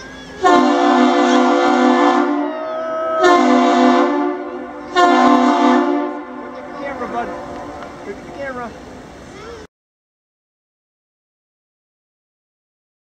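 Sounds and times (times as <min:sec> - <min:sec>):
ship's horn blasts: 0:00.0 - 0:09.1.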